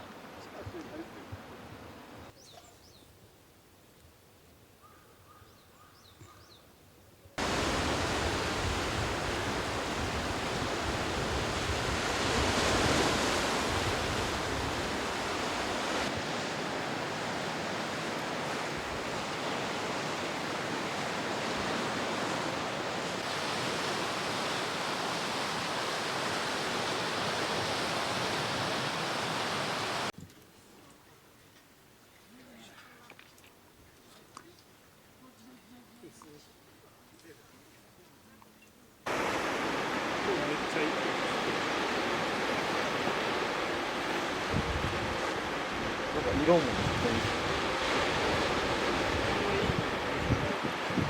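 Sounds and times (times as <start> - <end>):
rushing surf or wind: 7.4 - 30.1, 39.0 - 51.0.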